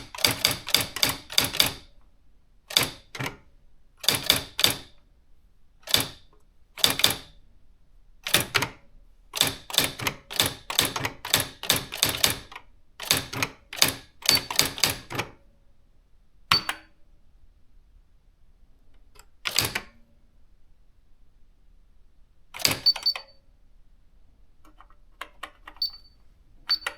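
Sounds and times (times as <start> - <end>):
typewriter keys striking: 0.0 - 1.8, 9.4 - 15.2.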